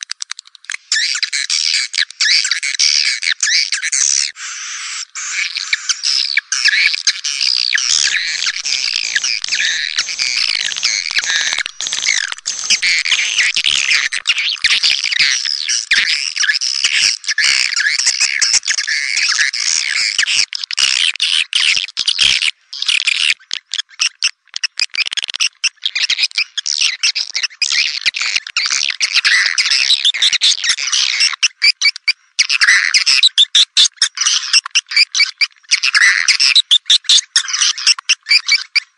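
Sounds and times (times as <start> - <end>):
swiftlets twittering: 7.8 - 15.0.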